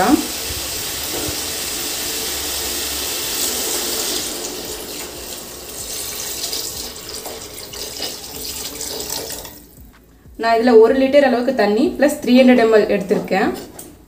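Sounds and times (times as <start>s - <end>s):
water pouring into a pot: 0.0s - 9.7s.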